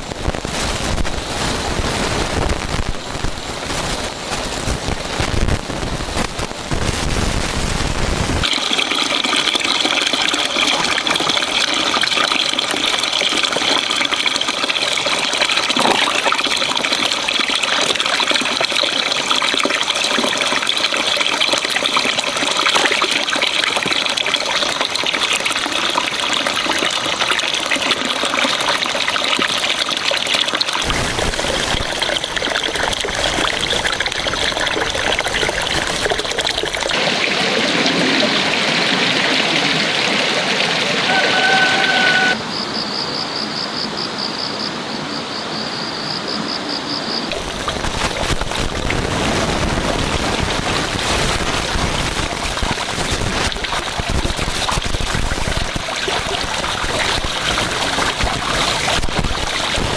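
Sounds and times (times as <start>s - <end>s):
running water trickling: 8.4s - 42.4s, 47.3s - 59.9s.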